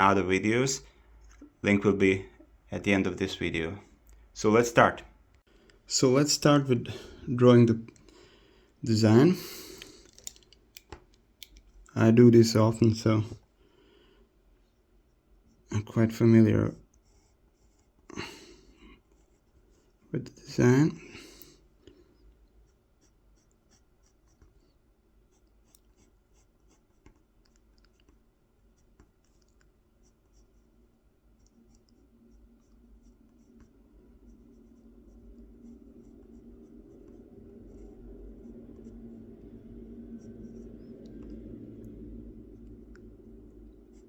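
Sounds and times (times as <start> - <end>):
pen scratching on wood: 40.2 - 41.3.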